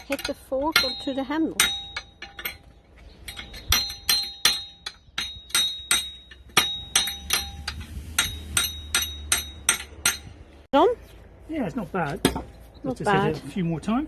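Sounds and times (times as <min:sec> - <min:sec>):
metallic strikes on garden fork: 0:00.0 - 0:10.5.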